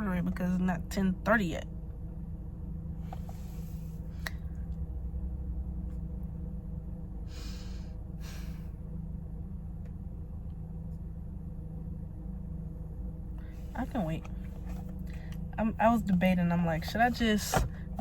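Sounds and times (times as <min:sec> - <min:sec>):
low hum: 0:00.0 - 0:18.0
sharp sniffs: 0:07.3 - 0:08.7
person breathing: 0:07.3 - 0:08.8.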